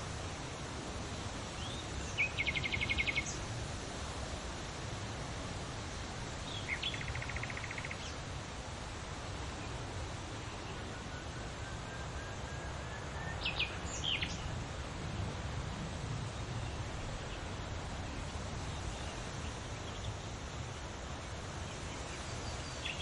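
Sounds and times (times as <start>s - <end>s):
leaves rustling in wind: 0.0s - 23.0s
songbird trilling: 1.6s - 3.4s, 6.5s - 8.2s.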